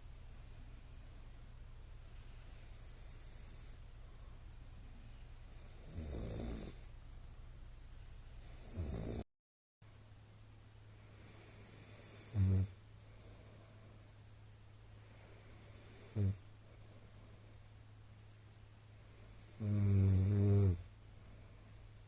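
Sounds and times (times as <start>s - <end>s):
steady low hum: 0.0s - 9.2s, 9.8s - 22.0s
man snoring loudly: 2.6s - 3.8s, 5.5s - 6.9s, 8.4s - 9.2s, 11.2s - 12.8s, 15.6s - 16.4s, 19.4s - 20.9s.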